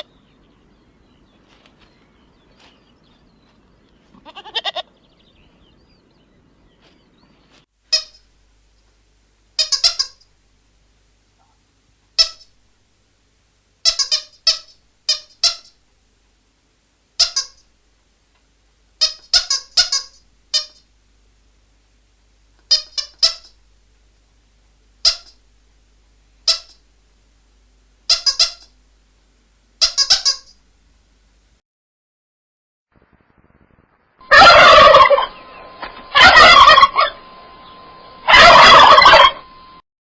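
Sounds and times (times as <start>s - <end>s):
kitten mewing: 4.1s - 4.9s.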